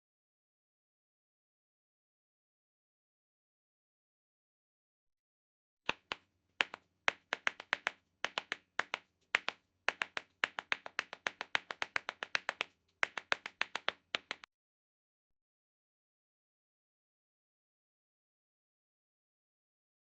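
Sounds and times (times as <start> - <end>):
tap shoes tapping on hard floor: 5.9 - 14.5.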